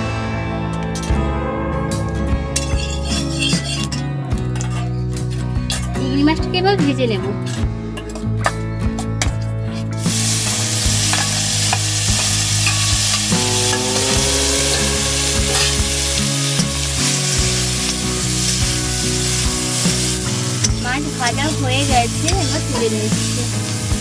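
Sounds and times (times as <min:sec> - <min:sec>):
prawns sizzling in hot oil: 0:02.6 - 0:06.0, 0:10.0 - 0:24.0.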